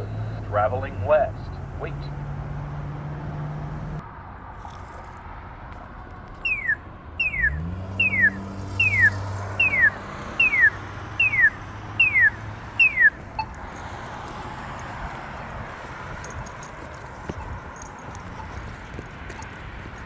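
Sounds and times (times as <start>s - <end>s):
pedestrian signal chirps: 0.0s - 2.2s, 6.4s - 18.6s.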